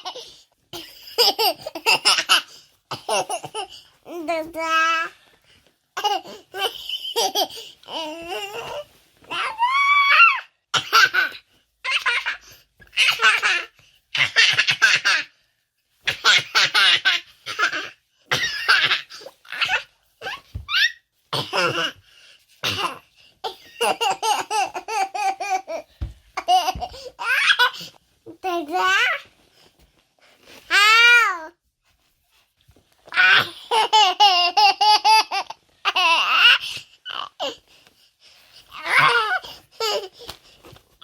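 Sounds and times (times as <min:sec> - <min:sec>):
baby laughing: 0:23.5 - 0:27.9, 0:33.2 - 0:36.7.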